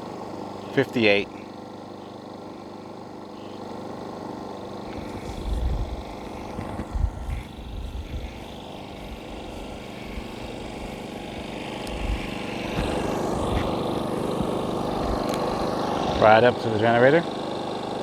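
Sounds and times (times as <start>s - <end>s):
generator running: 0.0s - 18.0s
low thumps on microphone: 4.9s - 16.2s.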